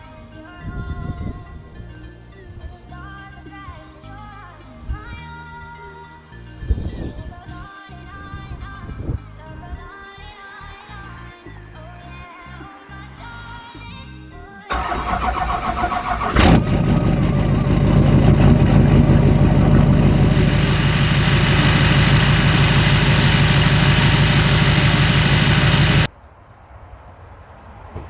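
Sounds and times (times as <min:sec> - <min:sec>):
diesel engine cranking: 0:14.7 - 0:26.1
diesel engine idling: 0:14.7 - 0:26.1.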